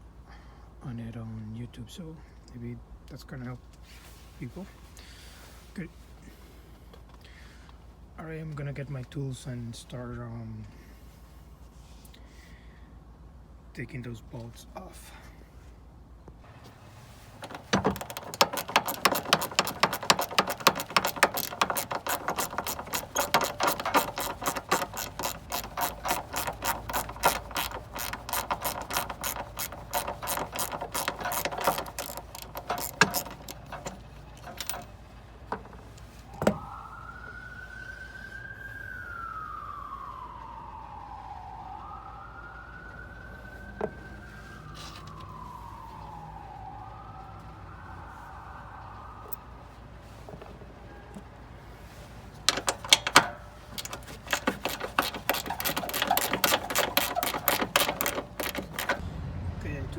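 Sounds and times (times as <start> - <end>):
knocks: 17.4 - 34.9
ratchet wrench clicking: 17.4 - 34.9, 52.5 - 59.0
siren wailing: 36.3 - 49.7.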